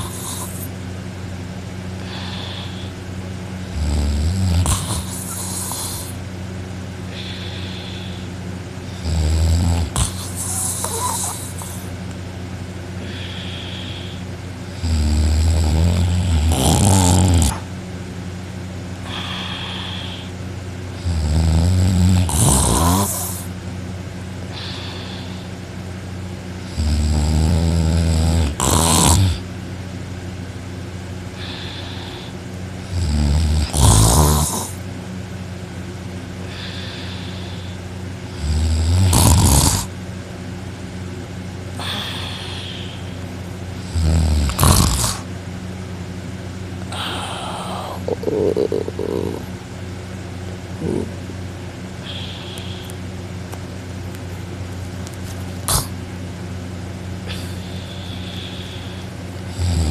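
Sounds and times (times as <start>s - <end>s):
person snoring loudly: 0.0s - 0.7s, 2.0s - 3.0s, 3.6s - 6.2s, 7.1s - 8.3s, 8.9s - 12.0s, 13.0s - 17.7s, 19.0s - 23.5s, 24.5s - 25.5s, 26.6s - 29.4s, 31.4s - 34.8s, 36.4s - 39.9s, 41.7s - 43.2s, 43.8s - 45.3s, 46.9s - 49.6s, 50.8s - 51.3s, 52.0s - 53.0s, 55.6s - 56.0s, 57.2s - 59.9s
faint breathing: 0.0s - 0.8s, 2.0s - 3.2s, 4.6s - 6.2s, 7.0s - 9.0s, 9.8s - 12.0s, 12.9s - 14.5s, 18.9s - 20.7s, 24.5s - 25.7s, 31.2s - 32.6s, 36.4s - 38.4s, 41.7s - 45.3s, 46.9s - 49.6s, 51.9s - 53.2s, 57.2s - 59.9s.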